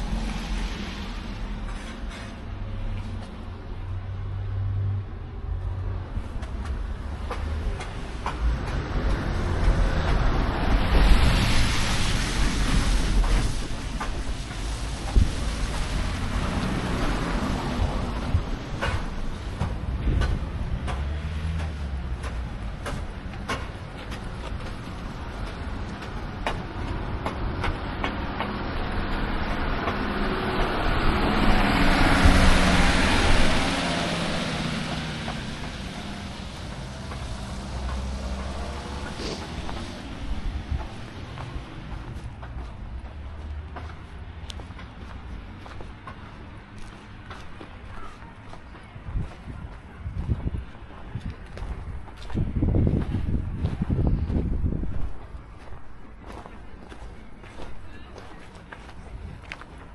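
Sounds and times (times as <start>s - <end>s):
car engine rumble: 0.0s - 59.9s
footsteps crunching on snow: 36.5s - 59.9s.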